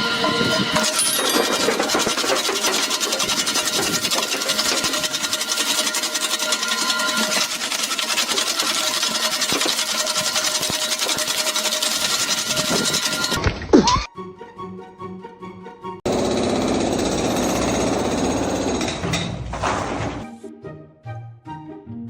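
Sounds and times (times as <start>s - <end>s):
machine rattling clatter: 0.2s - 13.4s, 16.1s - 20.2s.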